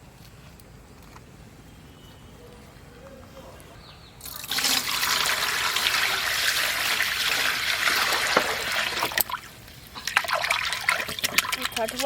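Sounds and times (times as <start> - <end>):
water pouring: 4.2 - 12.0
short splashes and knocks: 7.2 - 12.0.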